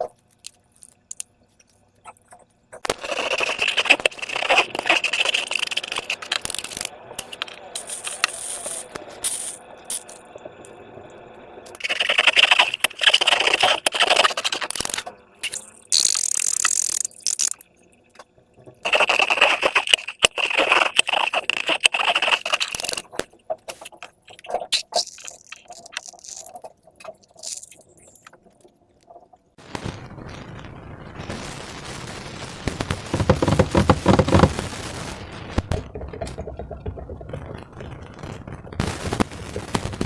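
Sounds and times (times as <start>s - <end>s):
wet crackly slime scraping: 0.0s - 10.2s, 11.7s - 17.7s, 18.8s - 29.2s, 32.8s - 34.7s
sharp clicks and ticks: 0.0s - 10.8s, 11.6s - 29.5s, 32.9s - 34.6s.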